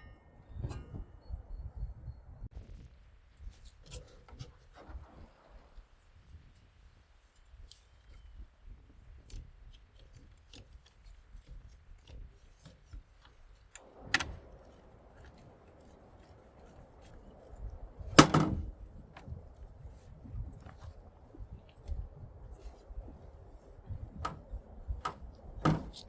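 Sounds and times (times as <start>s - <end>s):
faint handling clicks: 12.0s - 16.7s, 24.2s - 26.0s
clatter of hard parts: 18.2s - 18.7s, 25.0s - 26.0s.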